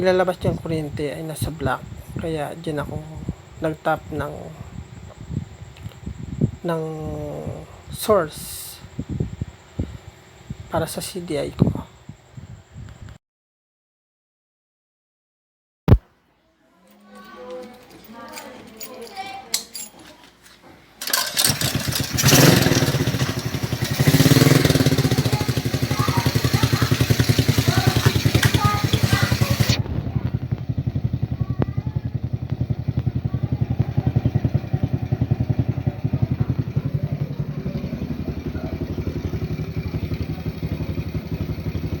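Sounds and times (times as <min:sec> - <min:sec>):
motorcycle engine idling: 0:21.0 - 0:42.0
motorcycle throttle blips: 0:21.1 - 0:42.0.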